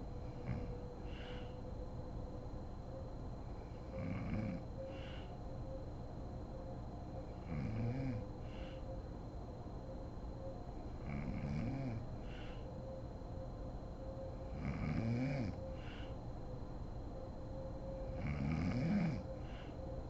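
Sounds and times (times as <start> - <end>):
woman snoring: 4.0 - 4.6, 7.5 - 8.2, 11.1 - 12.0, 14.6 - 15.6, 18.2 - 19.2.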